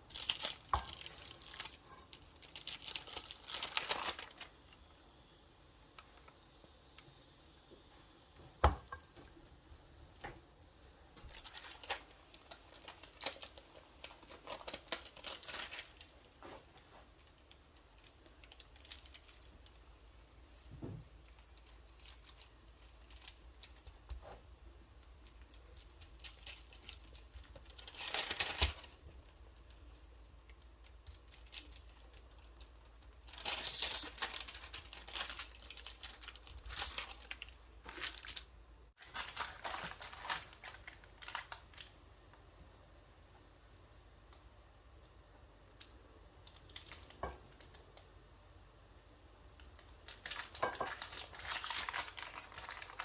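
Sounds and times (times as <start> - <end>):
packaging rustling and crinkling: 0.0 - 4.9, 11.2 - 42.0, 46.4 - 48.1, 49.6 - 53.0.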